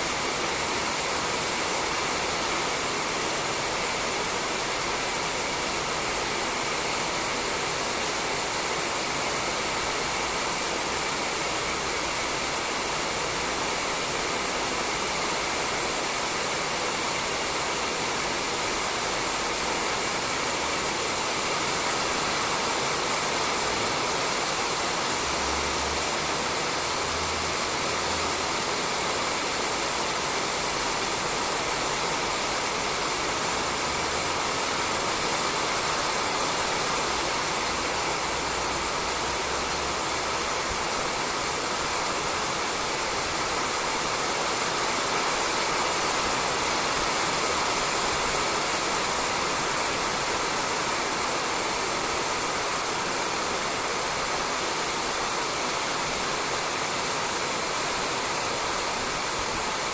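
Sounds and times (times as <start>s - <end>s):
rain falling on a roof: 0.0s - 59.9s.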